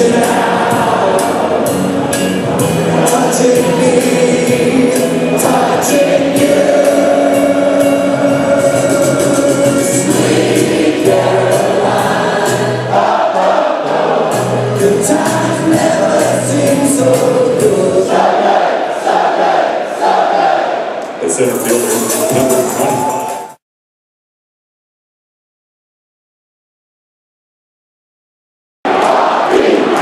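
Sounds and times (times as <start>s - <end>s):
band playing: 0.0s - 18.1s, 21.3s - 23.6s
choir singing long notes: 0.0s - 21.0s, 28.9s - 30.0s.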